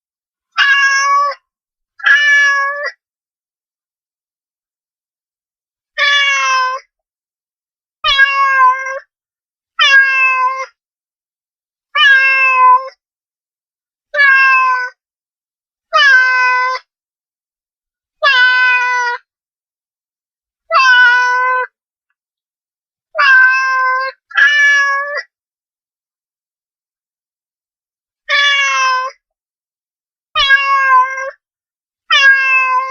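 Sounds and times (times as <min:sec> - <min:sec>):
cat meowing: 0:00.6 - 0:01.4, 0:02.0 - 0:03.0, 0:06.0 - 0:06.8, 0:08.0 - 0:09.0, 0:09.8 - 0:10.7, 0:12.0 - 0:13.0, 0:14.1 - 0:15.0, 0:15.9 - 0:16.9, 0:18.2 - 0:19.2, 0:20.7 - 0:21.8, 0:23.2 - 0:25.3, 0:28.3 - 0:29.2, 0:30.4 - 0:31.4, 0:32.1 - 0:32.9.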